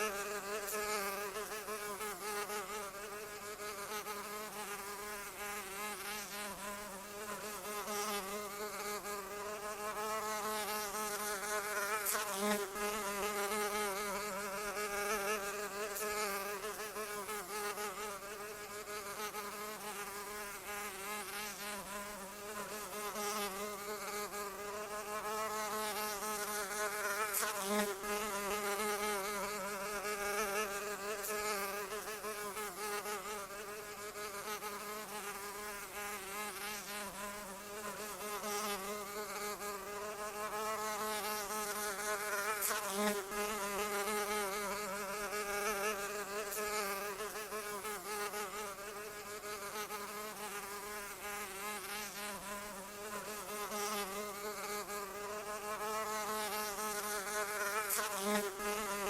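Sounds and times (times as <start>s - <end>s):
fly buzzing: 0.0s - 59.0s.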